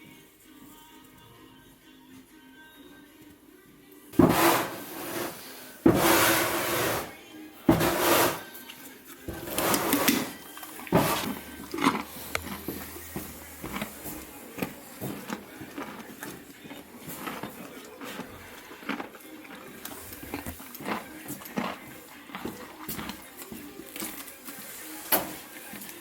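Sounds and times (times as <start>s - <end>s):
loud rough scraping noises: 4.2s - 8.6s, 9.3s - 14.1s.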